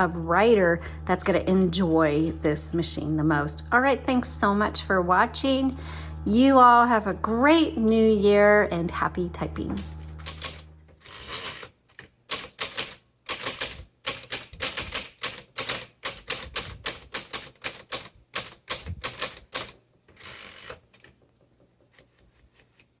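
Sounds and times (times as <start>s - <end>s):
typewriter keystroke clacks: 9.8s - 21.2s.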